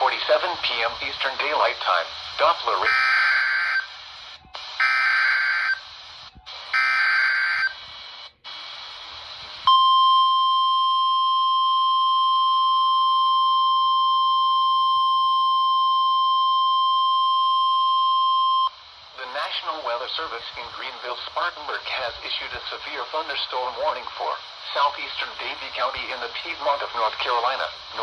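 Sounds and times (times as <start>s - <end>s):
steady warning alarm tone: 2.8s - 4.0s, 4.8s - 5.8s, 6.7s - 7.8s.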